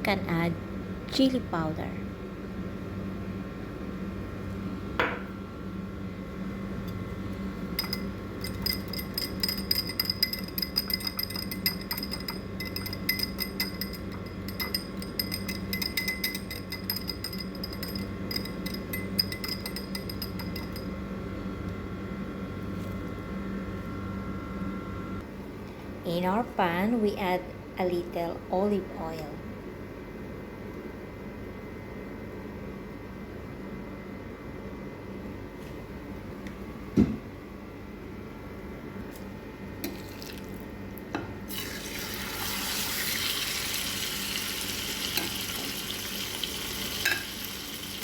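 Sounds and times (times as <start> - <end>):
spoon clinking against bowl: 7.7 - 21.0, 47.0 - 47.4.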